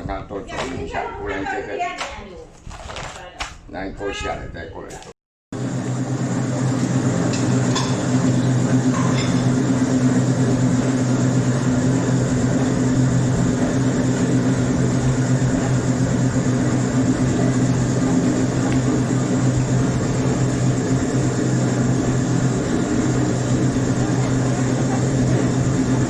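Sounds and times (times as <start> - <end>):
low hum: 5.6 - 26.0.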